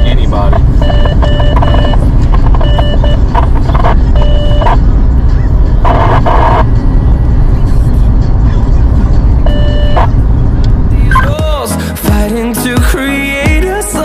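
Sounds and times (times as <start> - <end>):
short electronic beeps: 0.0 - 4.8, 9.4 - 10.2, 11.0 - 11.4
road rumble inside car: 0.0 - 12.5.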